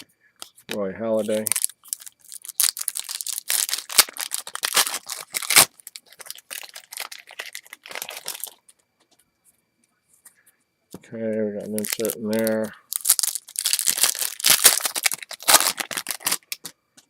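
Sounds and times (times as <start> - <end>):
card pack wrapper crinkling: 0.7 - 8.7, 11.6 - 16.8.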